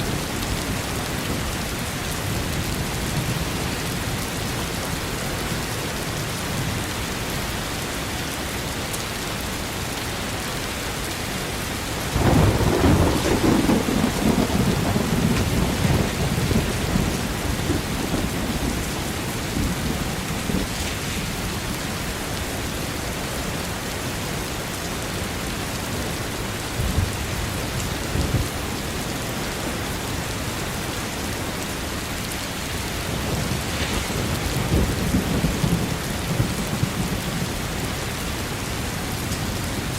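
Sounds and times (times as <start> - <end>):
heavy rain: 0.0 - 39.9
thunder rumbling: 12.1 - 23.0, 26.6 - 29.1, 32.6 - 37.9.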